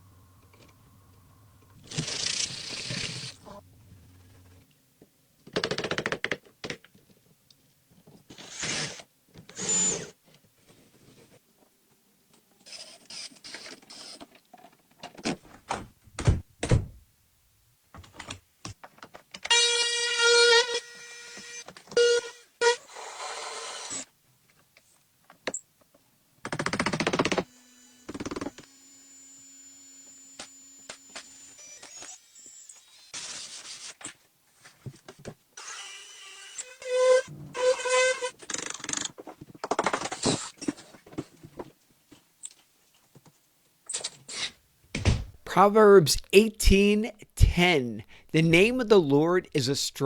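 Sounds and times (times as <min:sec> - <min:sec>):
small motor whirring: 0:27.4 - 0:33.5.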